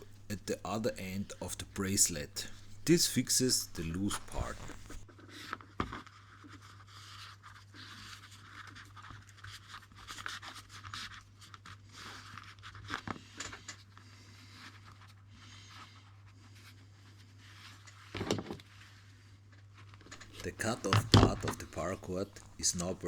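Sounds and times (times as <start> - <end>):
cord scraping and rustling: 0.0 - 5.1, 20.2 - 23.0
handling noise: 0.0 - 5.1, 20.2 - 23.0
low steady hum: 0.0 - 5.1, 20.2 - 23.0.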